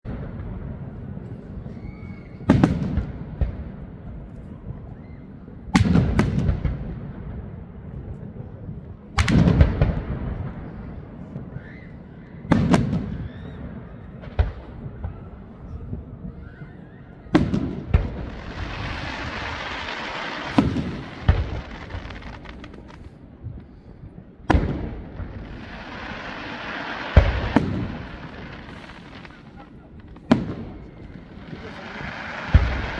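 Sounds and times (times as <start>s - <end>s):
fireworks bangs with echo: 0.1s - 32.9s
fireworks crackling: 8.9s - 16.6s, 17.3s - 32.9s.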